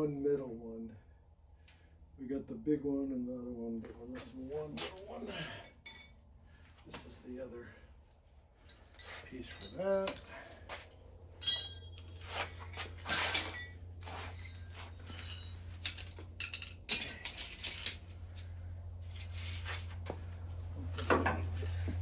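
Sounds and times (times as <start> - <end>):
steady low hum: 0.0 - 22.0
sharp ringing metal clinks: 5.4 - 7.2, 8.7 - 10.5, 11.4 - 18.0
metal hardware clinking and rattling: 5.5 - 7.2, 8.7 - 10.5, 11.4 - 22.0.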